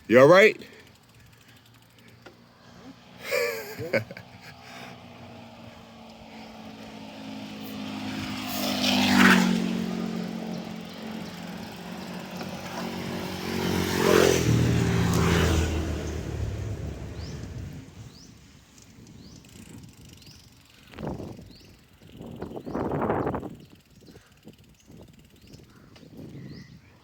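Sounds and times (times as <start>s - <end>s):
vehicles driving past: 0.1s - 20.8s.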